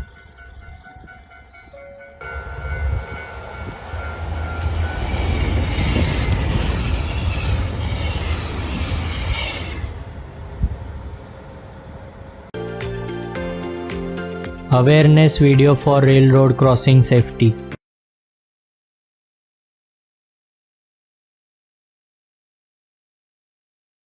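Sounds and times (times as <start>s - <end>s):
train wheels rumbling on rails: 0.0s - 12.5s.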